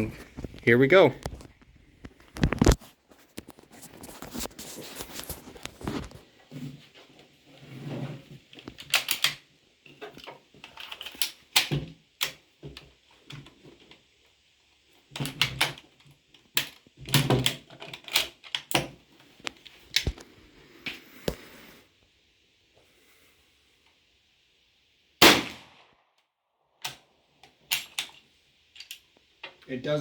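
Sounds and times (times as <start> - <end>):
rifle bolt clicking and clattering: 8.8 - 9.4, 16.6 - 18.9, 27.7 - 28.2.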